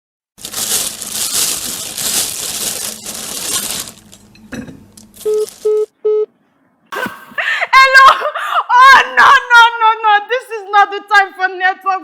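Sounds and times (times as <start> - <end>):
harsh crackling noise: 0.4 - 4.2.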